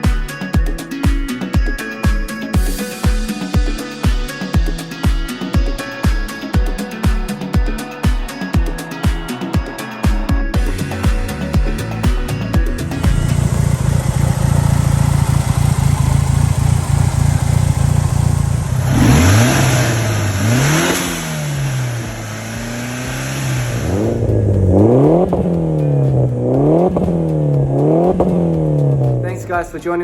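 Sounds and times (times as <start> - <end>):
car engine revving: 10.7 - 29.4.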